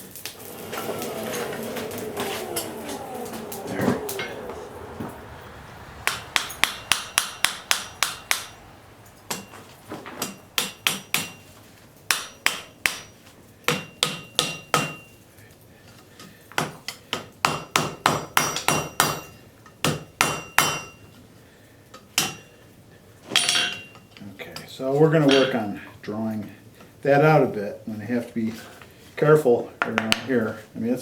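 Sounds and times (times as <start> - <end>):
hammer striking metal on anvil: 6.0 - 8.6, 9.2 - 9.6, 10.2 - 11.5, 12.1 - 15.1, 16.6 - 21.0, 22.2 - 22.5.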